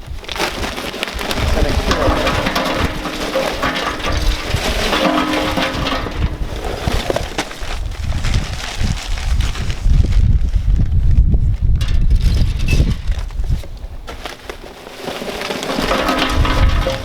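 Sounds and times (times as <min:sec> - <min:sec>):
wood pellets poured into metal hopper: 0:00.4 - 0:08.9, 0:14.8 - 0:17.0.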